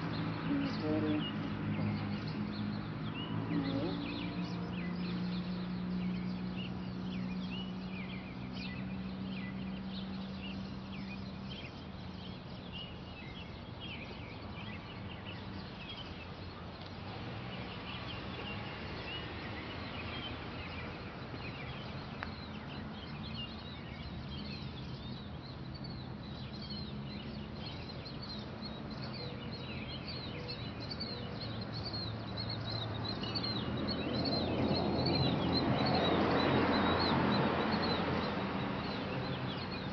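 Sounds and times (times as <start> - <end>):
broad noise: 0.0 - 2.4
small birds chirping: 0.0 - 39.9.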